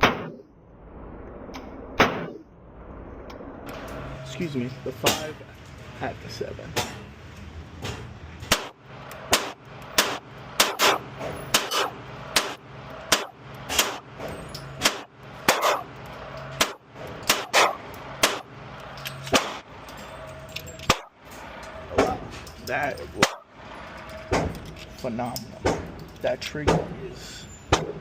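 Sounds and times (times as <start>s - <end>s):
pistol gunshots: 0.0s - 0.5s, 2.0s - 2.4s, 8.5s - 14.1s, 14.8s - 15.9s, 16.6s - 18.5s, 19.3s - 19.6s.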